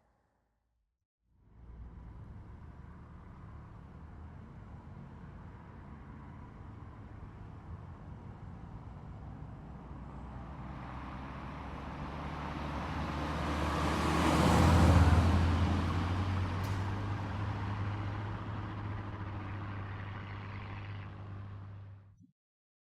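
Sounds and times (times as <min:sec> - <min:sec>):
low engine hum: 0:01.5 - 0:22.2
car driving past: 0:09.7 - 0:22.1.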